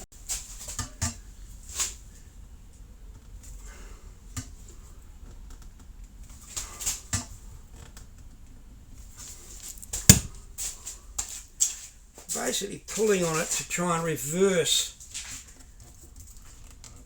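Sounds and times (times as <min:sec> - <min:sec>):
light knocks and clicks on brass: 0:10.1 - 0:10.3.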